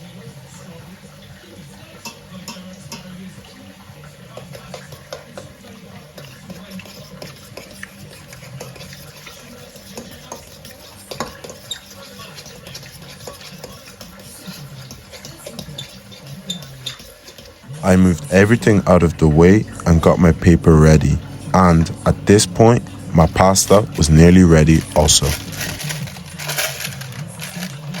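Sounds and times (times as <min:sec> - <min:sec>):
fork scraping bowl: 0:06.2 - 0:28.0
steady low hum: 0:17.8 - 0:28.0.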